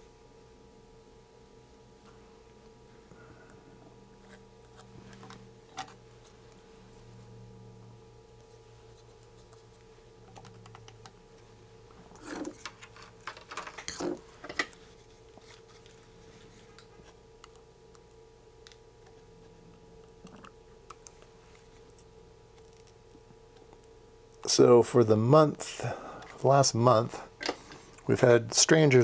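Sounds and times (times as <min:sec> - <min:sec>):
steady low hum: 0:00.0 - 0:29.0
clicks and rustling of small parts: 0:12.2 - 0:16.0.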